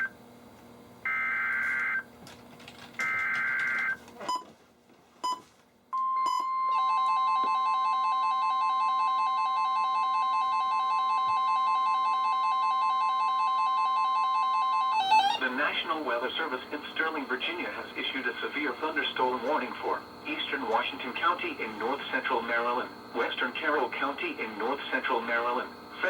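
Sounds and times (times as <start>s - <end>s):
steady warning alarm tone: 1.1s - 2.1s, 3.0s - 4.4s, 6.0s - 20.5s
rapidly pulsing beep alarm: 6.2s - 15.4s.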